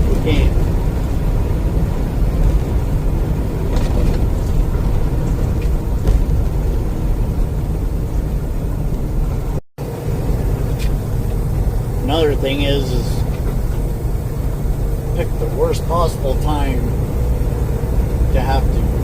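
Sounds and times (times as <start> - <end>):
truck engine and road rumble: 0.0 - 19.0.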